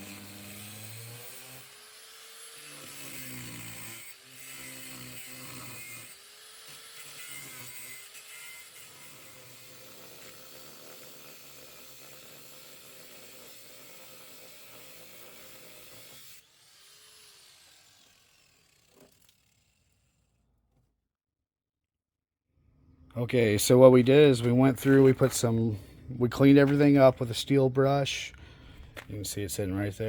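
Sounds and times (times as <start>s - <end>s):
electric power tool motor: 0.0s - 20.4s.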